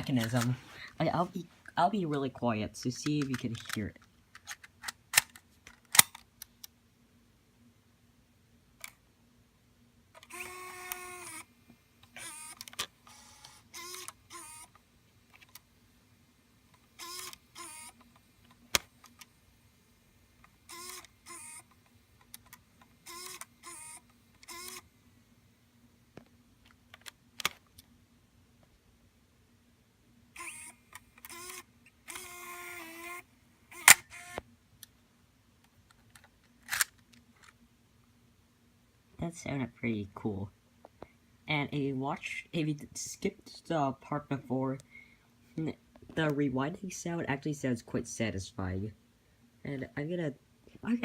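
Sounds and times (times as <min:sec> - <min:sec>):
short motor whirs: 0:10.2 - 0:11.5, 0:12.2 - 0:14.8, 0:17.0 - 0:18.0, 0:20.7 - 0:21.7, 0:23.0 - 0:24.8, 0:30.4 - 0:34.4
sharp mechanical clicks: 0:20.4 - 0:24.8, 0:30.4 - 0:34.4.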